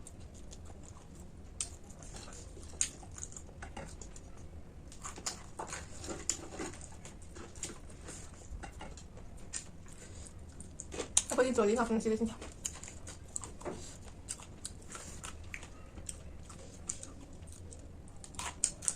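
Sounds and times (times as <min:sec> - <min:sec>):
person chewing crunchy snack: 0:12.4 - 0:18.9.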